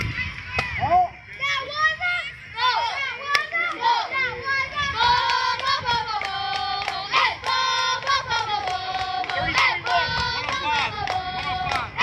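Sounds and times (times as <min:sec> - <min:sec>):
girls singing a cheer in unison: 0:02.6 - 0:12.0
rhythmic clapping: 0:03.2 - 0:03.9, 0:04.9 - 0:12.0.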